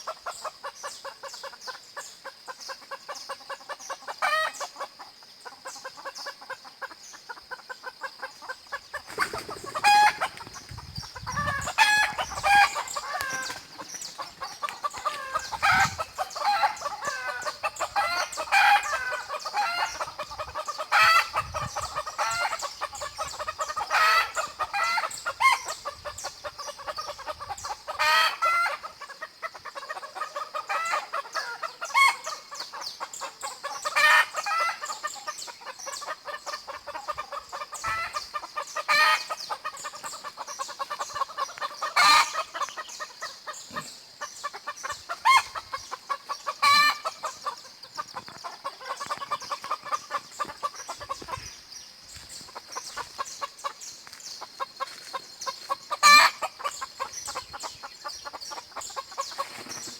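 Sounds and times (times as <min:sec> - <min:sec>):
chickens clucking: 0:00.0 - 0:59.9
songbirds chirping: 0:00.0 - 0:59.9.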